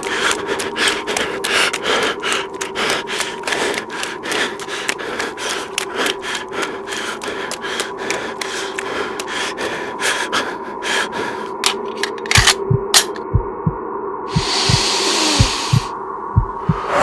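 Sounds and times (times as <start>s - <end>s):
rhythmic rasping strokes: 0.0s - 10.6s.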